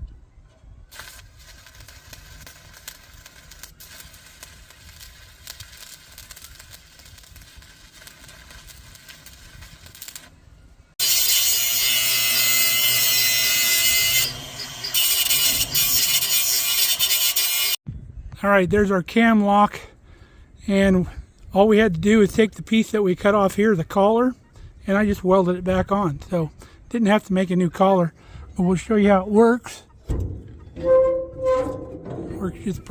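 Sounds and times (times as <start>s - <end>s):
welding arc crackling: 0.9s - 10.3s, 11.0s - 17.8s.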